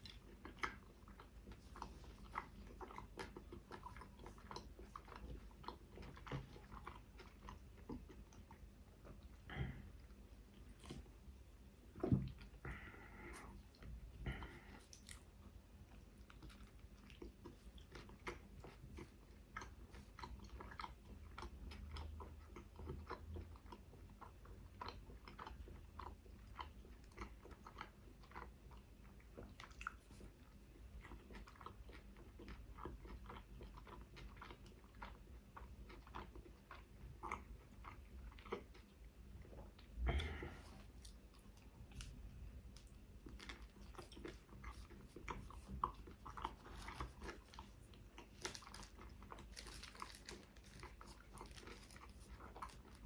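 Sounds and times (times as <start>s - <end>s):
chewing and biting food: 0.0s - 53.0s
small crunches: 40.2s - 53.0s.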